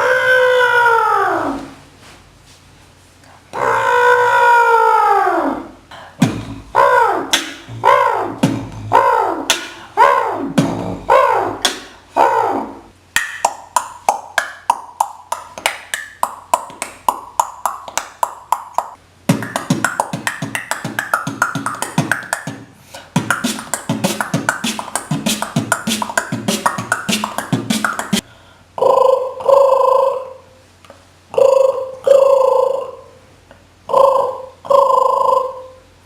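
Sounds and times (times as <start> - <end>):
beatboxing mouth clicks: 5.9 - 12.0, 13.2 - 28.3
fast rhythmic mouth sounds: 5.9 - 28.3
held humming tone: 6.2 - 11.7.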